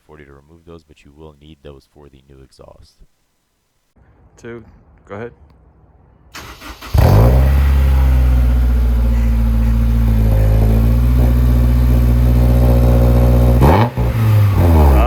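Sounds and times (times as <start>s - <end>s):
car engine idling: 6.4s - 15.0s.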